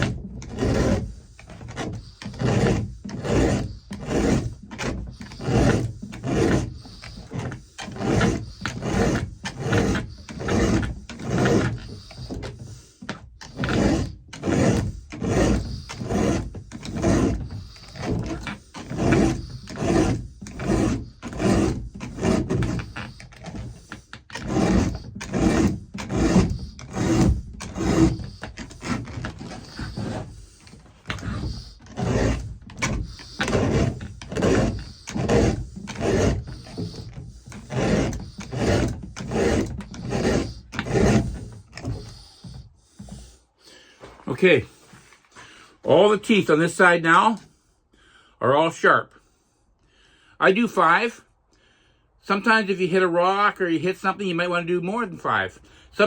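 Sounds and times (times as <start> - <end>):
file rasping on chainsaw chain: 0.0 - 43.4.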